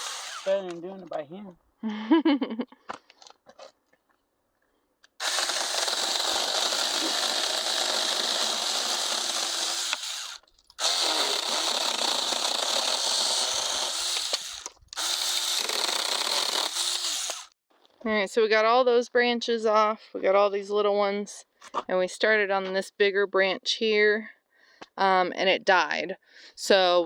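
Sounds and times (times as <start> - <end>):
electric chainsaw cutting branches: 0.0 - 0.7, 5.2 - 17.6.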